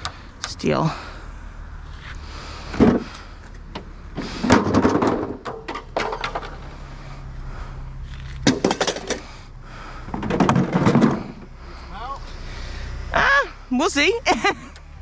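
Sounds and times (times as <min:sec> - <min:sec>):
scrap metal clanking: 0:04.2 - 0:06.8, 0:10.0 - 0:11.5
metal rattling clatter: 0:04.4 - 0:06.7, 0:08.4 - 0:09.3, 0:10.1 - 0:11.5.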